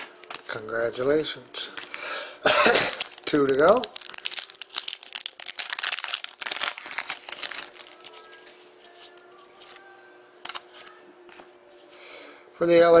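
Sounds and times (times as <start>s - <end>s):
foil wrapper crinkling and tearing: 2.8s - 8.5s.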